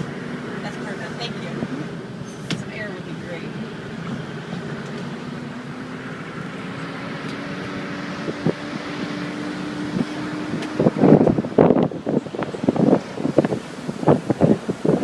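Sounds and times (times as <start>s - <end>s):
car engine hum: 0.0s - 15.0s
road noise: 0.0s - 15.0s
wind buffeting through window: 7.6s - 15.0s.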